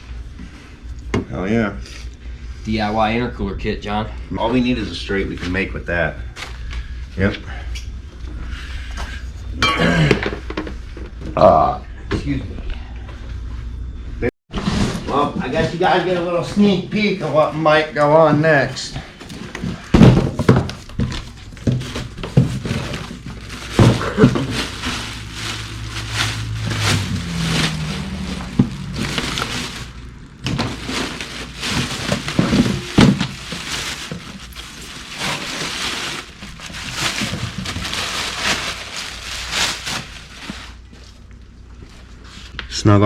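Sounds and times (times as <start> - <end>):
packaging crinkling and rustling: 19.1 - 41.4.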